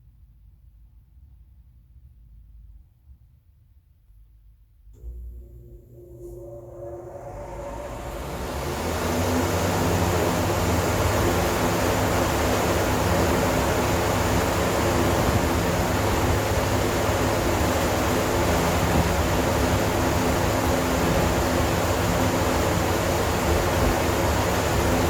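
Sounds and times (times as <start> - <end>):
low motor hum: 5.0 - 25.0
rush of fan air: 5.0 - 25.0.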